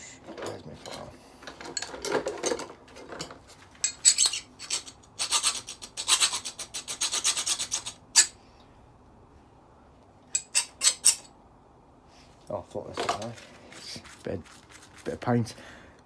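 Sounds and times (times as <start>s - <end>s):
hand file rasping on metal: 3.9s - 8.3s.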